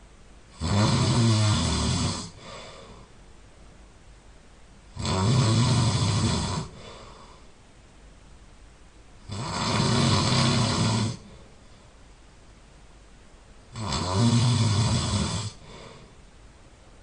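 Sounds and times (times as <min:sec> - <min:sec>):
person snoring loudly: 0:00.5 - 0:02.9, 0:04.9 - 0:07.3, 0:09.3 - 0:11.4, 0:13.7 - 0:16.1
soft breath: 0:02.3 - 0:03.2, 0:06.4 - 0:07.6, 0:11.2 - 0:12.1, 0:15.4 - 0:16.4.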